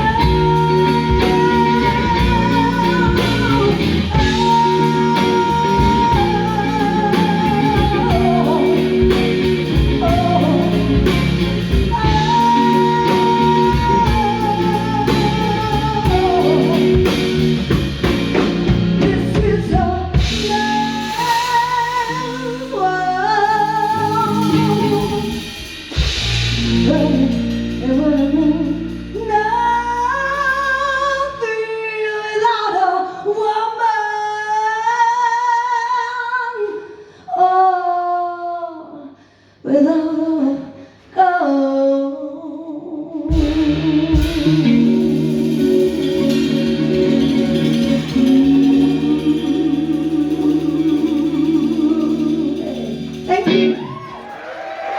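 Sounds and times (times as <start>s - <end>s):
electric guitar lead: 0.0s - 31.4s, 43.3s - 54.9s
live band playing soul ballad: 0.0s - 32.8s, 43.3s - 54.9s.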